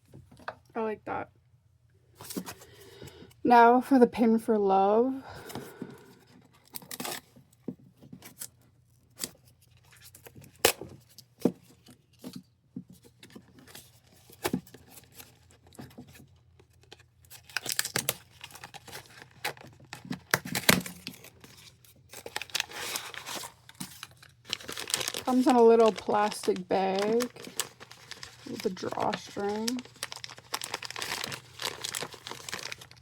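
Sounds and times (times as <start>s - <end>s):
plastic crinkling: 16.6s - 33.0s
packaging tearing: 16.9s - 33.0s.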